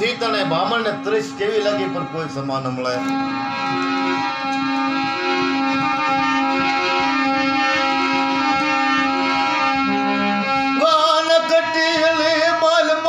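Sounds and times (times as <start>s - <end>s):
slow keyboard melody: 0.0s - 13.0s
steady drone: 3.1s - 13.0s.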